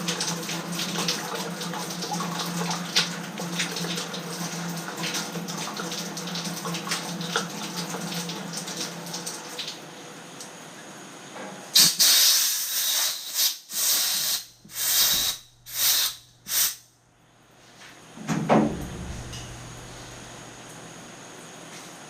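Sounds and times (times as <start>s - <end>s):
compressed air hissing bursts: 11.8s - 16.8s
dull low thud: 18.4s - 20.0s.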